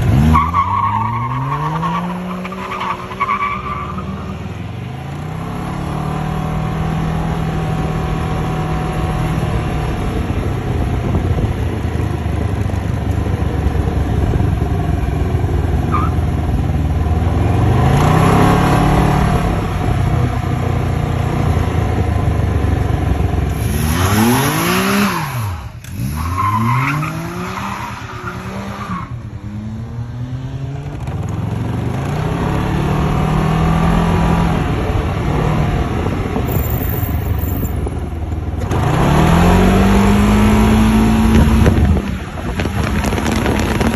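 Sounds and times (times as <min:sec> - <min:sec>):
engine revving: 0:17.3 - 0:19.9, 0:23.5 - 0:28.8, 0:38.6 - 0:42.0.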